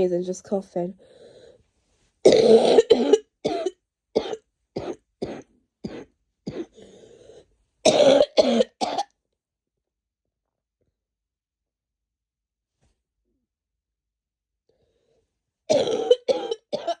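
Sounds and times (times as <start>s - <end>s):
woman coughing: 2.3s - 6.8s, 7.9s - 9.1s, 15.7s - 17.0s.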